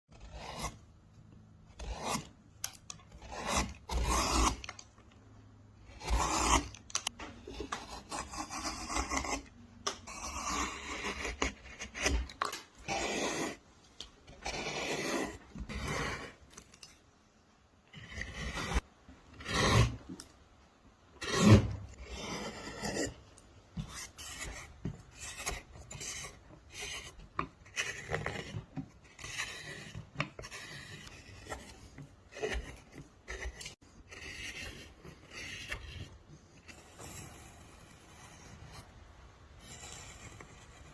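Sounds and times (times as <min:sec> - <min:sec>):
rasping strokes on wood: 0:00.1 - 0:00.8, 0:03.0 - 0:04.8, 0:05.9 - 0:06.8, 0:07.5 - 0:13.6, 0:14.4 - 0:16.4, 0:23.8 - 0:38.9.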